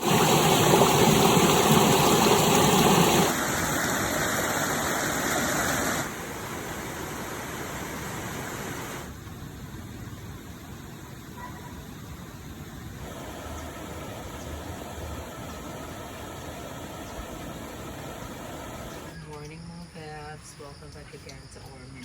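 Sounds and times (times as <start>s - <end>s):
steady rushing noise: 0.0s - 9.2s.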